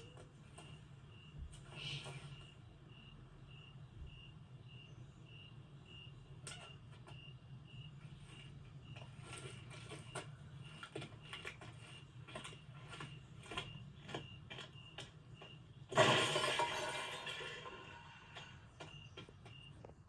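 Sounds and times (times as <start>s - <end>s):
shattering crash: 15.9s - 18.1s.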